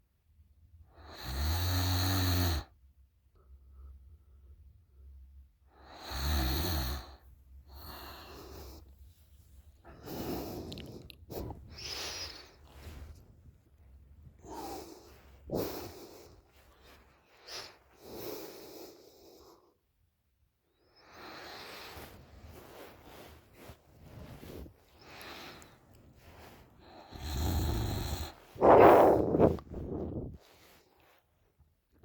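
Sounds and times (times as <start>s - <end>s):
woman snoring: 1.0s - 2.7s, 5.8s - 7.2s, 14.4s - 16.1s, 26.9s - 29.6s.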